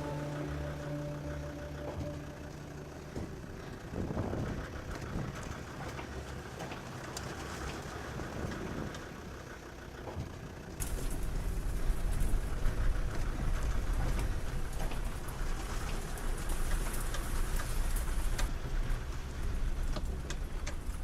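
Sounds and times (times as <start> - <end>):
heavy low rumble: 0.0 - 6.6, 10.8 - 21.0
rain-like hiss with crackles: 0.0 - 21.0.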